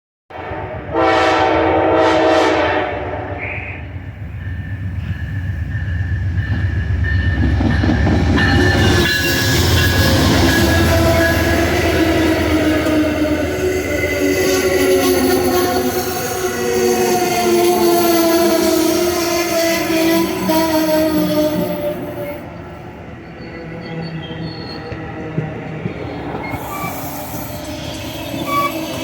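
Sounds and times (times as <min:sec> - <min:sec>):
train horn blast: 0:00.3 - 0:03.9, 0:09.5 - 0:22.5
train rumble passing: 0:00.5 - 0:29.0
wheel and rail noise: 0:03.5 - 0:29.0
high wheel squeal: 0:08.4 - 0:25.4, 0:26.1 - 0:29.0.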